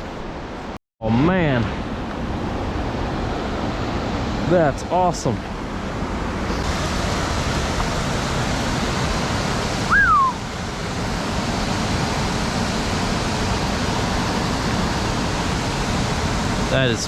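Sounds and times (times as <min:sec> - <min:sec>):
creek water flowing: 0:06.5 - 0:17.0
short whistle-like note: 0:09.9 - 0:10.4.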